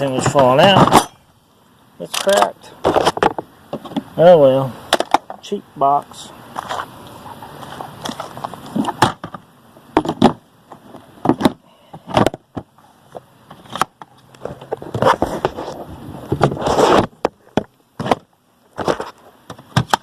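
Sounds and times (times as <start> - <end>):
scrape and rattle: 14.4 - 17.1.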